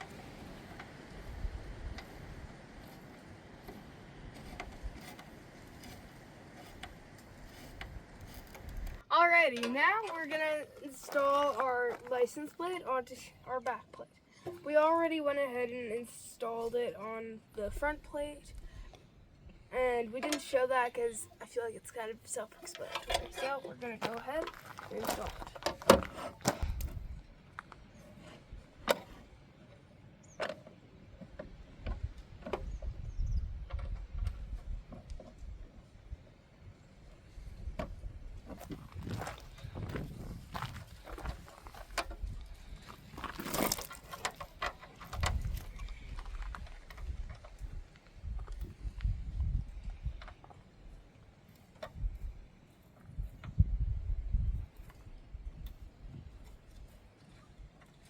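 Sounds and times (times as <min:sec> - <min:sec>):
wind rumble on microphone: 0:00.0 - 0:09.1, 0:25.0 - 0:27.4, 0:31.2 - 0:51.0, 0:51.8 - 0:57.0.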